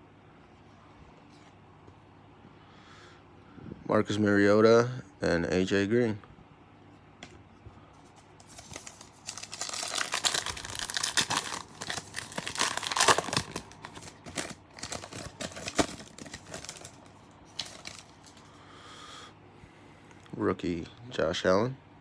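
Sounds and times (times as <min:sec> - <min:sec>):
wrapper tearing and crinkling: 0:08.4 - 0:18.5.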